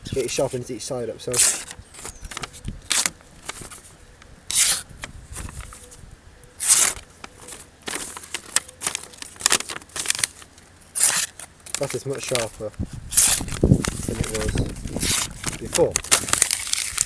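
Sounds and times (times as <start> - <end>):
paper rustling: 0.2 - 6.0, 6.6 - 17.0
knife slicing through paper: 1.3 - 1.8, 4.5 - 5.7, 6.6 - 10.3, 11.0 - 12.5, 13.1 - 17.0.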